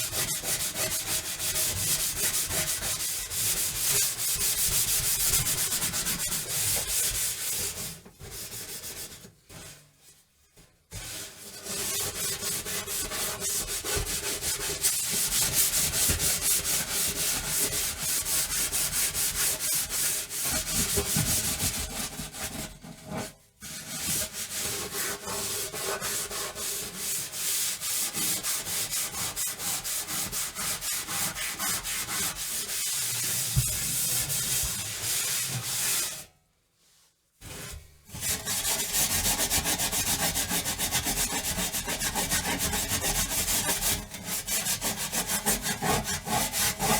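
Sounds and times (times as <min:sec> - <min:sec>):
scrubbing an oven: 0:00.0 - 0:10.1, 0:11.0 - 0:22.8, 0:23.6 - 0:36.2.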